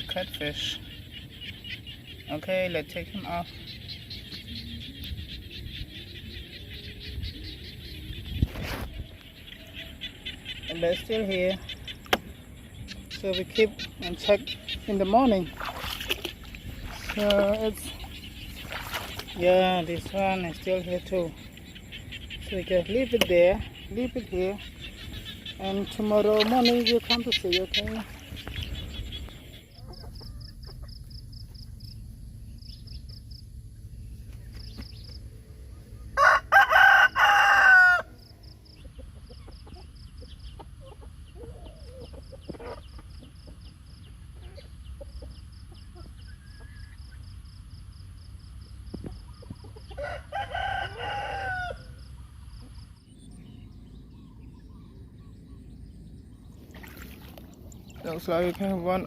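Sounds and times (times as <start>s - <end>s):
rooster crowing: 36.2s - 38.2s, 50.0s - 52.0s.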